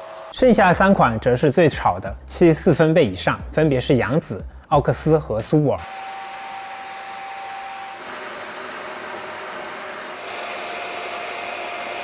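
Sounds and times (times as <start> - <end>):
vacuum cleaner motor whine: 0.0 - 0.4, 5.8 - 12.0.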